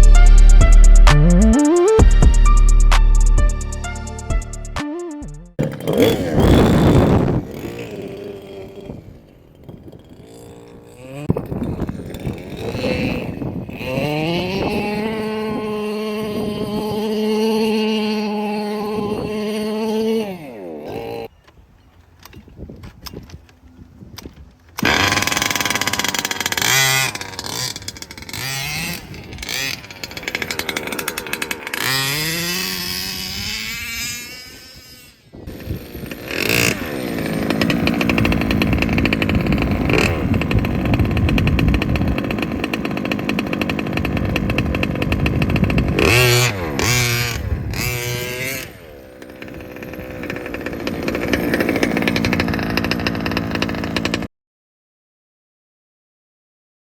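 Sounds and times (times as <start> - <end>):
two-stroke engine revving: 0.0 - 4.8, 5.5 - 21.3, 24.8 - 54.3.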